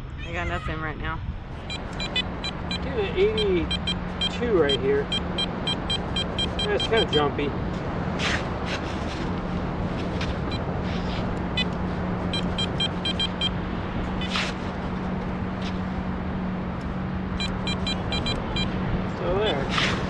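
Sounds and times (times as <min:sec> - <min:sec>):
metal detector beeping: 0:01.6 - 0:07.3, 0:11.4 - 0:13.5, 0:17.4 - 0:18.7.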